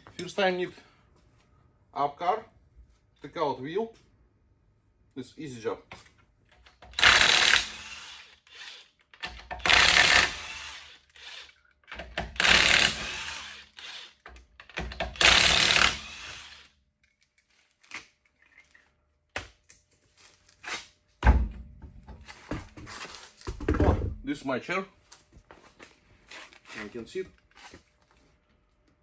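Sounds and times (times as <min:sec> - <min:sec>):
impact wrench bursts: 0:06.9 - 0:14.2, 0:14.8 - 0:16.7.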